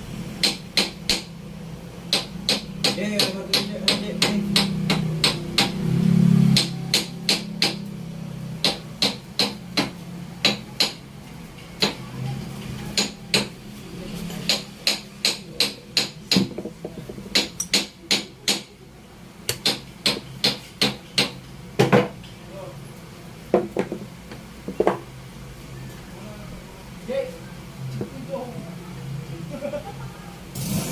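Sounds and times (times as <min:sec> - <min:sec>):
hammer tapping: 0:00.4 - 0:01.3, 0:02.1 - 0:05.8, 0:06.5 - 0:07.8, 0:08.6 - 0:11.0, 0:13.0 - 0:13.5, 0:14.4 - 0:18.7, 0:19.5 - 0:22.1.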